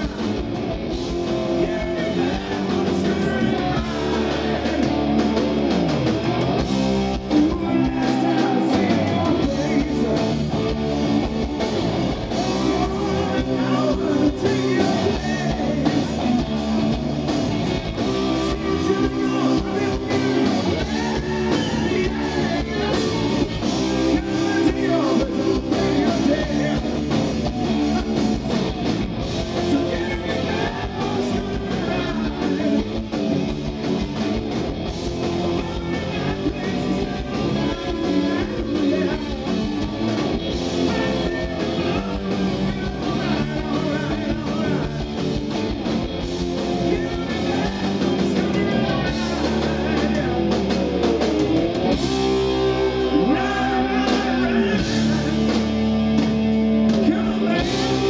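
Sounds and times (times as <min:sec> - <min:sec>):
electric guitar: 0:00.0 - 0:58.0
live rock band playing: 0:00.0 - 0:58.0
person singing: 0:01.3 - 0:05.0, 0:07.2 - 0:10.9, 0:12.3 - 0:16.6, 0:18.0 - 0:28.4, 0:29.4 - 0:33.4, 0:35.2 - 0:39.9, 0:40.6 - 0:45.2, 0:46.6 - 0:51.3, 0:52.1 - 0:55.6, 0:56.9 - 0:58.0.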